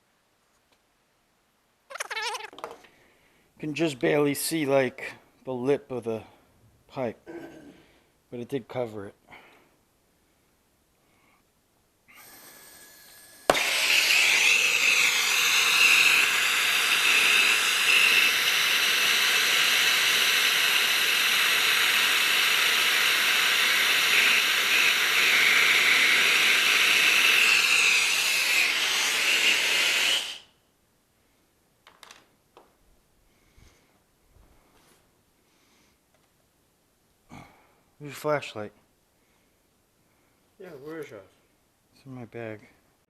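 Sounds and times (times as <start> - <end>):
gas torch hissing burn: 12.1 - 30.5.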